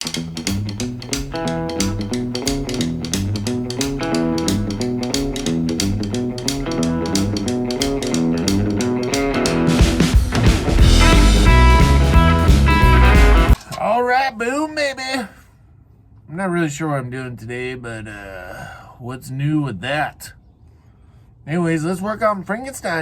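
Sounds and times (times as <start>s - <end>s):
boogie-woogie music: 0.0s - 13.6s.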